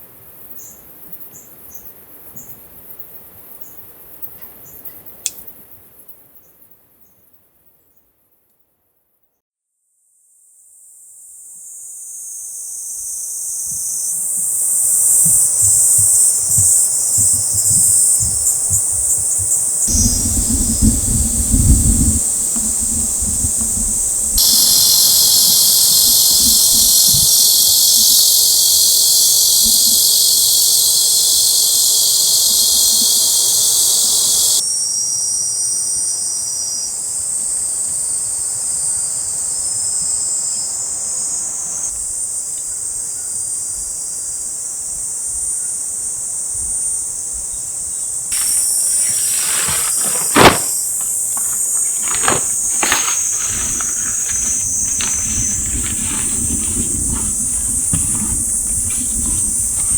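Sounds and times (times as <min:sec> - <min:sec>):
insects chorus: 0:00.0 - 0:06.8, 0:10.6 - 0:59.9
sharp knock: 0:48.4 - 0:54.3.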